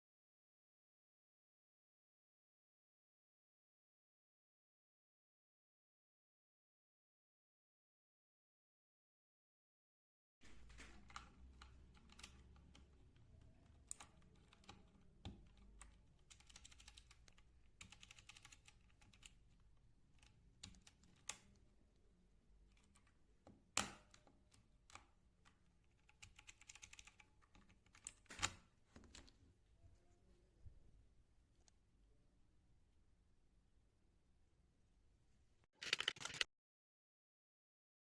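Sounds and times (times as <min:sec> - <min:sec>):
mechanical keyboard typing clicks: 0:10.6 - 0:19.4, 0:25.9 - 0:29.2, 0:35.8 - 0:36.5.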